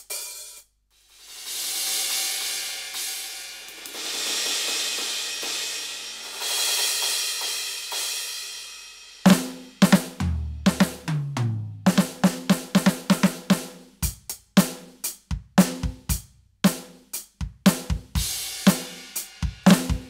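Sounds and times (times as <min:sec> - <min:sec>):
drum strikes: 0:09.3 - 0:13.8.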